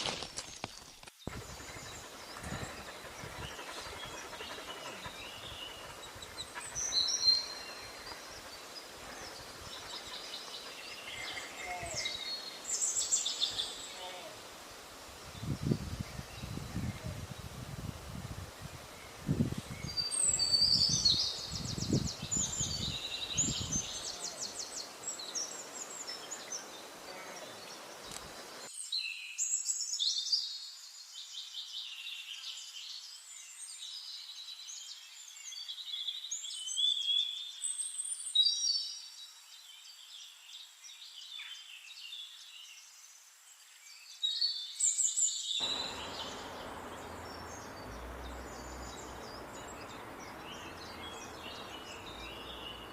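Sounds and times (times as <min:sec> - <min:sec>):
songbirds singing: 0:00.6 - 0:43.0, 0:43.8 - 0:52.9
low rumbling: 0:45.6 - 0:52.9.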